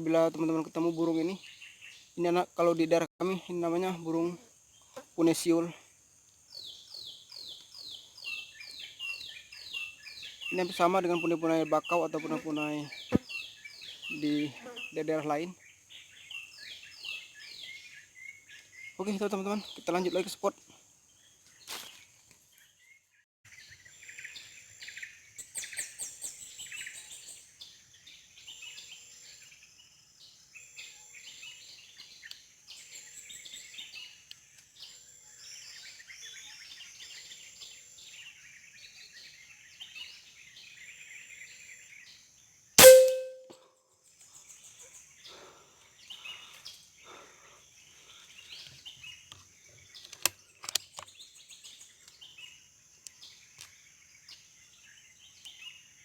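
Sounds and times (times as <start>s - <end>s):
forest birds chirping: 0.0s - 56.0s
sharp loud crack: 42.8s - 43.4s.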